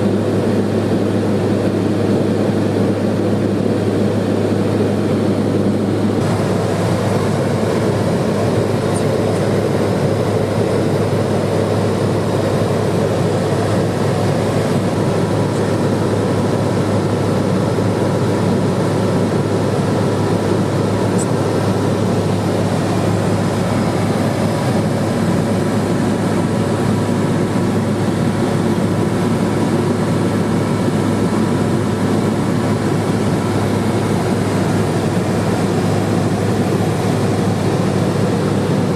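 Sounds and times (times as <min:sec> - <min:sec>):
propeller aircraft engine drone: 0:00.0 - 0:38.9.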